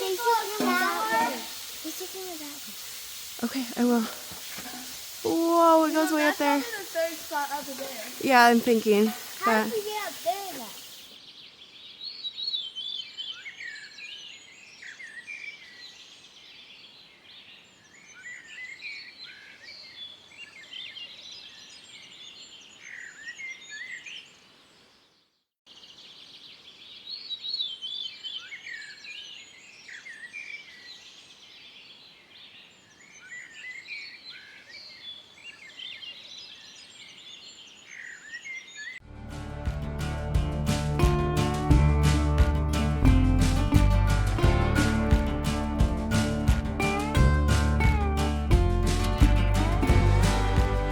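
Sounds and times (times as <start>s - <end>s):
faint steady hiss: 0.0s - 12.5s
songbirds chirping: 2.5s - 39.0s.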